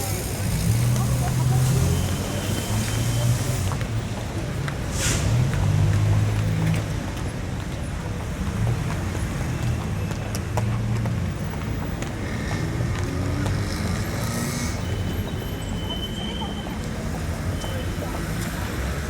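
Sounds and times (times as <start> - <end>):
passing vehicle hiss: 0.0 - 6.7
road traffic rumble: 0.0 - 19.0.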